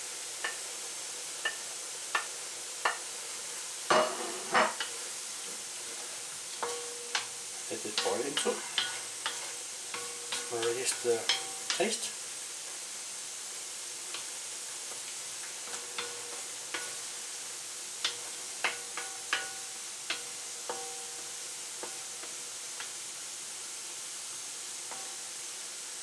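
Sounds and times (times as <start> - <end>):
meat sizzling in a frying pan: 0.0 - 26.0
utensil knocking against pan: 10.0 - 12.0, 18.0 - 20.9.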